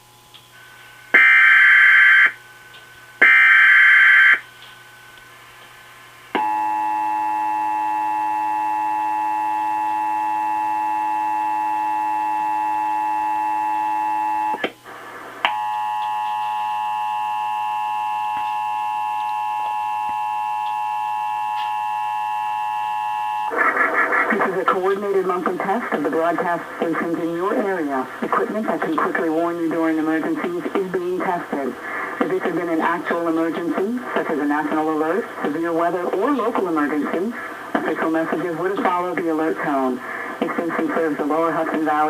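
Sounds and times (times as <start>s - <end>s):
steady multi-tone attention signal: 6.4s - 14.6s, 15.4s - 23.6s.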